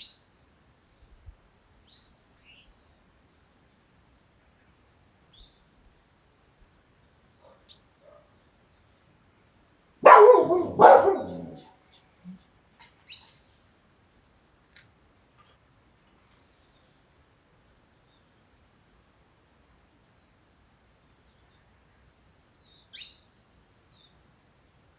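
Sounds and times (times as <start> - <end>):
dog barking: 7.4 - 8.3, 10.0 - 11.7.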